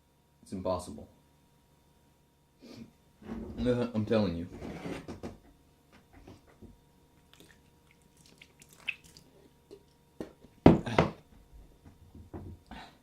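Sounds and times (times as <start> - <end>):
man chewing wetly: 7.2 - 10.0.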